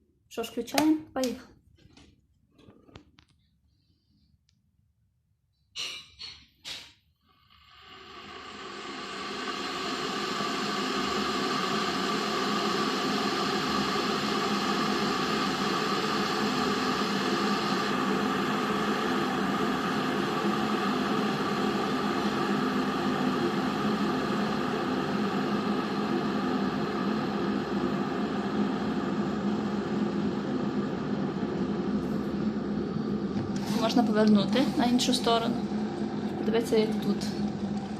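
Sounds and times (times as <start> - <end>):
electric kettle heating water: 0.4 - 1.4, 7.2 - 37.9.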